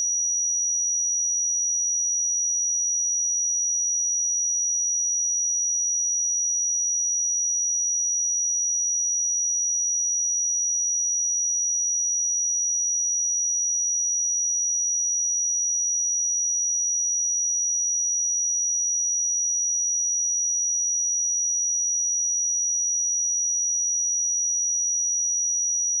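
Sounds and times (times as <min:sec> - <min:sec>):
high-pitched sine test tone: 0:11.0 - 0:26.0.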